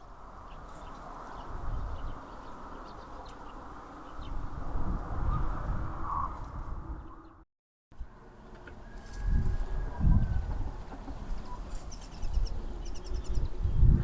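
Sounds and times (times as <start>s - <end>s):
wind buffeting microphone: 0.1s - 7.4s, 8.8s - 14.0s
small birds chirping: 0.4s - 4.4s, 10.9s - 14.0s.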